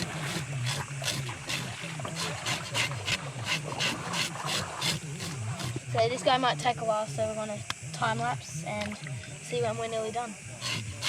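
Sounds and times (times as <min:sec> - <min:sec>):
knife scraping fish scales: 0:00.0 - 0:05.9, 0:10.6 - 0:11.0
low wavering hum: 0:00.0 - 0:11.0.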